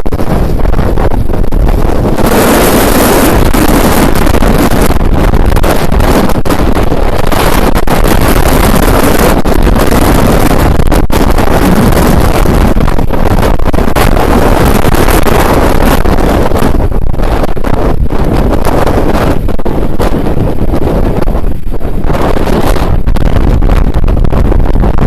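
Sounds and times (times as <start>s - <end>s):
strong wind blasting microphone: 0.0s - 25.0s.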